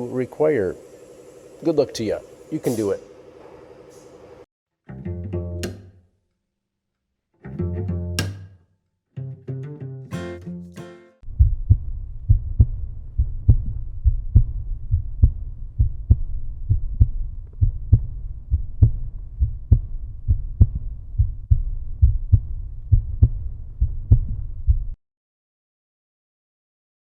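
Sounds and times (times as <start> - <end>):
deep bass-heavy beat: 11.3 - 25.0.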